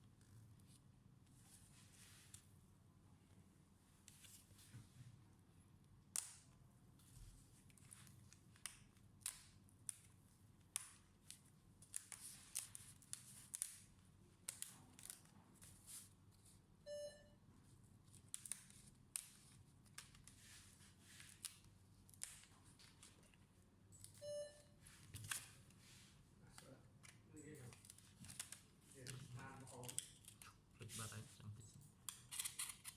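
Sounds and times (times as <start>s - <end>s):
short electronic beep: 16.9s - 17.3s, 24.2s - 24.7s.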